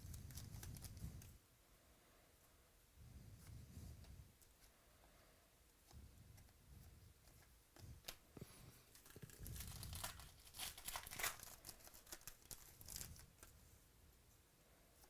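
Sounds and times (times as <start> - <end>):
wrapper tearing and crinkling: 8.9 - 13.5.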